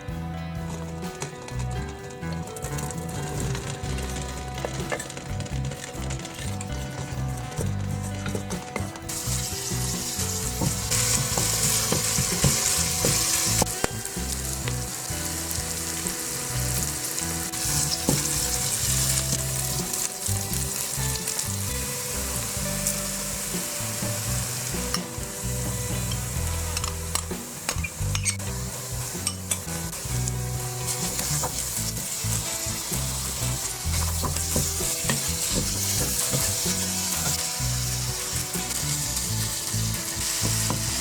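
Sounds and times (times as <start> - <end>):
food sizzling in a pan: 9.1 - 41.0.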